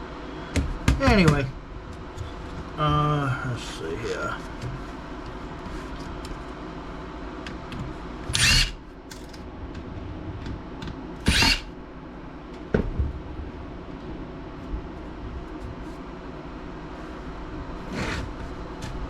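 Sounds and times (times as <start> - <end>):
electric screwdriver whirring: 8.3 - 8.8, 11.2 - 11.7.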